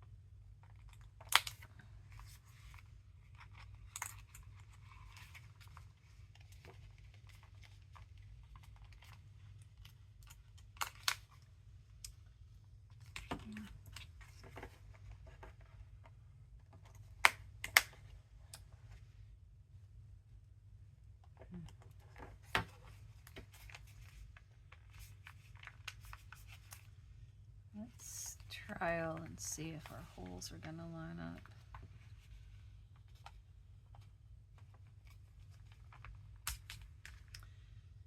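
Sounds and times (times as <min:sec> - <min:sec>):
low steady hum: 0:00.0 - 0:38.0.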